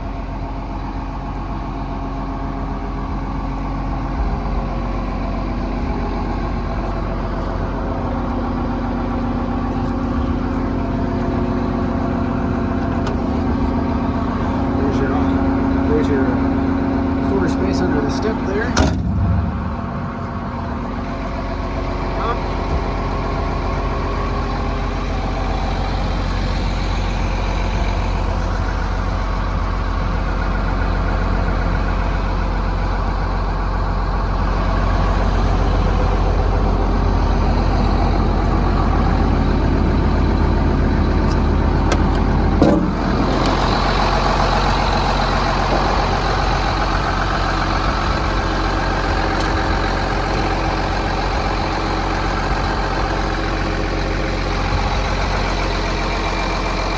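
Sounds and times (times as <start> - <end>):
excavator diesel engine idling: 0.0 - 56.9
short knock: 18.8 - 19.7.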